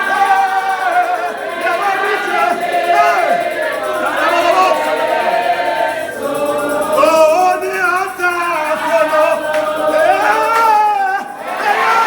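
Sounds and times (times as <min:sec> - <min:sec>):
congregation singing a worship song: 0:00.0 - 0:12.0.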